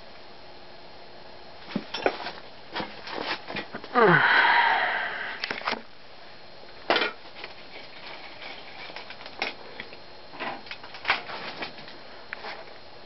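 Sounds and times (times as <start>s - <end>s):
ceiling fan running: 0.0s - 13.0s.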